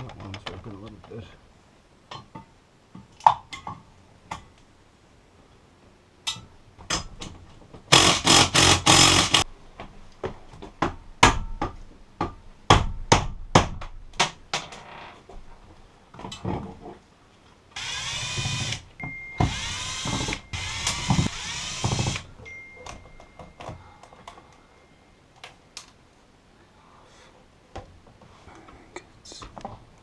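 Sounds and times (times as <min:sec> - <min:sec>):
sharp knocks on metal: 0:10.8 - 0:14.4.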